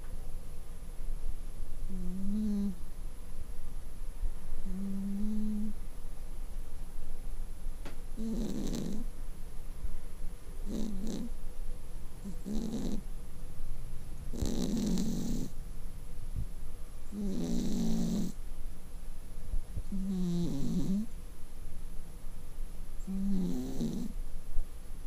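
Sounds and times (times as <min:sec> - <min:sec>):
cat snoring: 0:01.9 - 0:02.8, 0:04.6 - 0:05.8, 0:08.2 - 0:09.1, 0:10.6 - 0:11.3, 0:12.2 - 0:13.0, 0:14.3 - 0:15.6, 0:17.1 - 0:18.4, 0:19.9 - 0:21.1, 0:23.0 - 0:24.2.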